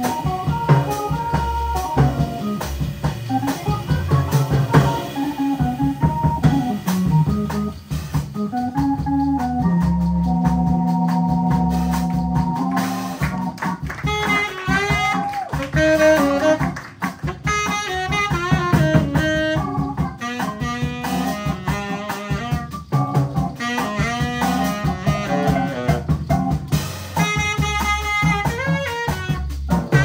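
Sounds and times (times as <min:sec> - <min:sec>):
organ-like chords: 0:00.0 - 0:15.2, 0:18.9 - 0:26.9
live jazz band: 0:00.0 - 0:30.0.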